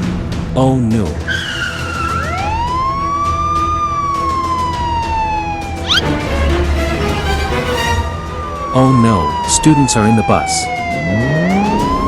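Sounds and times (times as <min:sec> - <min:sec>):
siren wailing: 0:01.3 - 0:06.2, 0:07.7 - 0:12.0.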